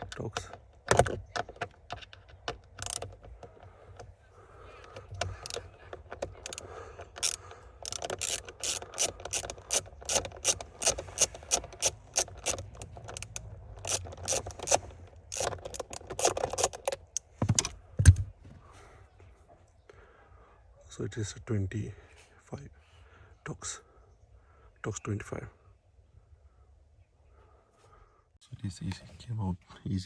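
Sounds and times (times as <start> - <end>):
hand ratchet clicking: 0.0 - 18.2.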